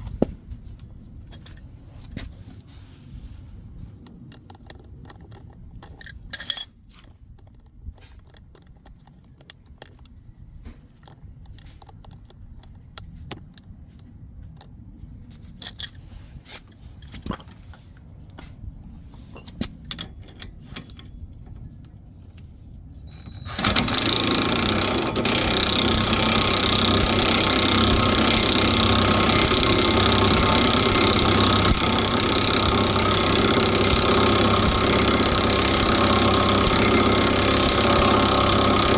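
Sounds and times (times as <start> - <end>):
metal tool parts clinking: 5.0 - 6.9, 15.5 - 16.0, 16.6 - 21.2
loud steady machine noise: 23.1 - 38.9.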